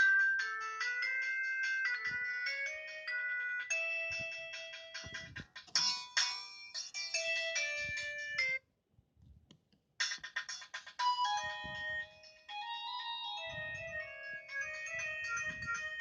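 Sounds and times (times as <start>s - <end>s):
polyphonic phone ringtone: 0.0s - 8.6s, 11.0s - 16.0s.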